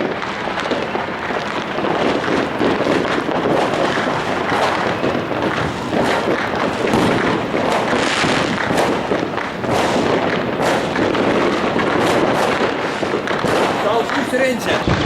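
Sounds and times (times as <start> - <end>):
firecrackers crackling: 0.0 - 15.0
firework bangs: 0.0 - 15.0.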